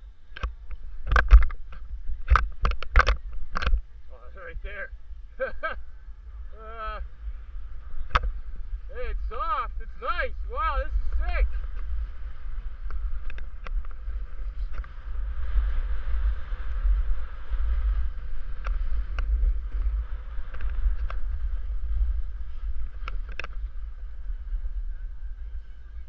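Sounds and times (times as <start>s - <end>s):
wind buffeting microphone: 0.0s - 26.0s
snowboard sliding through snow: 6.4s - 23.0s.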